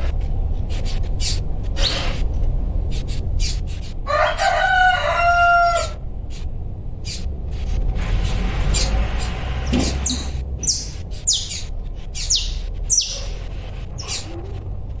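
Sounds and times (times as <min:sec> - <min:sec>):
bird chick chirping: 0:02.9 - 0:07.3, 0:08.2 - 0:14.7
low rumble: 0:06.0 - 0:15.0.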